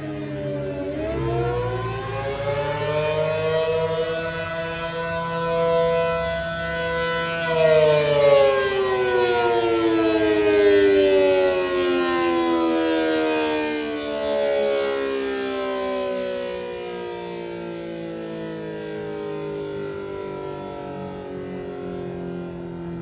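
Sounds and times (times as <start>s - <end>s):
two-tone warning siren: 0.0s - 23.0s.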